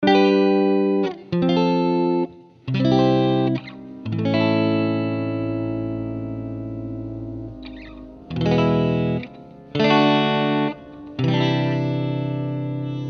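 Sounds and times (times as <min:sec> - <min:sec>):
background music chords: 0:02.7 - 0:13.0.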